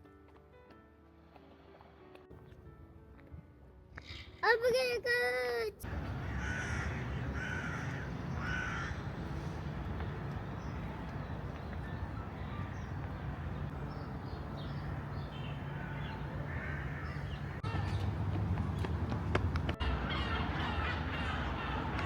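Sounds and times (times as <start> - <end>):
crows cawing: 5.9 - 9.6, 15.6 - 17.9, 19.8 - 22.0.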